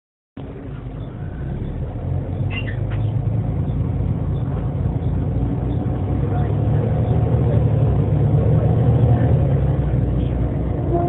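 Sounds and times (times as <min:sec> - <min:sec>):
bus engine running: 0:00.4 - 0:11.0
brief squeak: 0:02.5 - 0:03.1.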